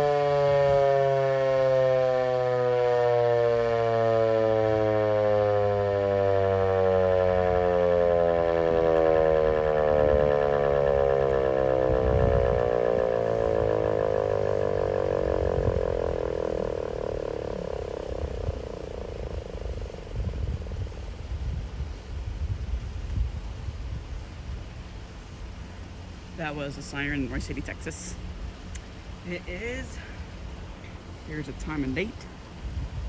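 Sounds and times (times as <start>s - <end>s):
warning siren winding down: 0.0s - 23.2s.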